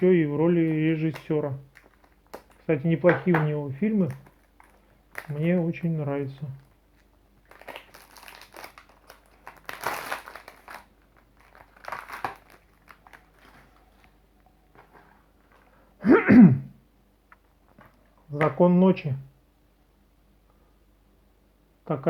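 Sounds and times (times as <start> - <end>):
plastic wrap crinkling and tearing: 0.0 - 2.7, 3.8 - 14.2.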